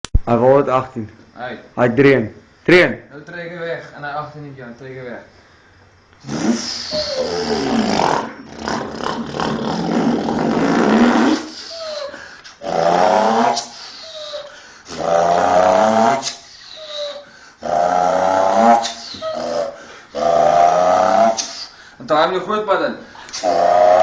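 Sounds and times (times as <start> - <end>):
person imitating truck engine: 6.2 - 21.8, 23.3 - 24.0.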